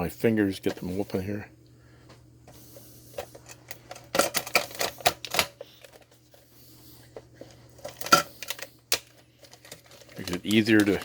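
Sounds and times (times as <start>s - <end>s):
plastic wrapping crackling: 7.8s - 11.0s.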